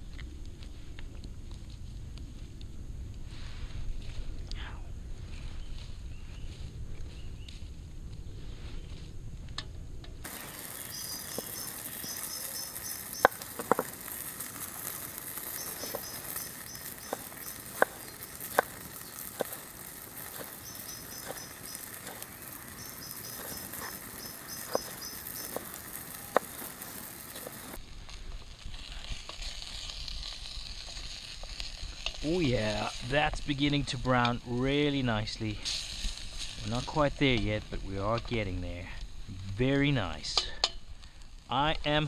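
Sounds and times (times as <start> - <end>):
campfire crackling and popping: 0.0 - 4.6, 9.3 - 42.0
bird singing: 10.3 - 14.0, 14.9 - 27.8.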